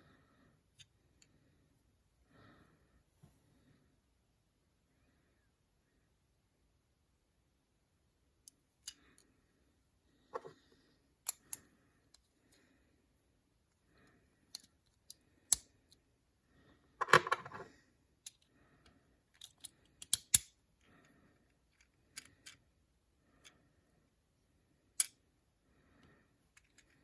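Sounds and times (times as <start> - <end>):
plastic parts clicking: 19.3 - 20.5, 25.0 - 25.2.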